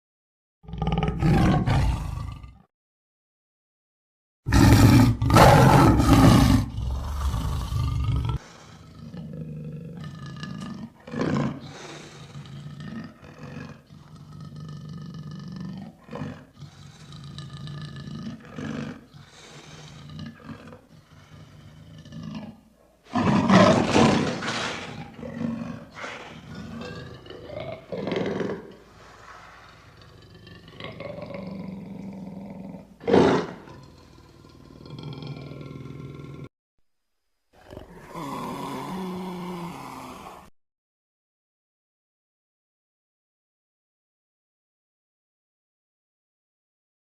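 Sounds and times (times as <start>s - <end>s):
big cat growling and grunting: 0.6s - 2.7s, 4.5s - 36.5s, 37.6s - 40.5s
big cat roaring: 0.6s - 2.7s, 4.5s - 36.5s, 37.6s - 40.5s.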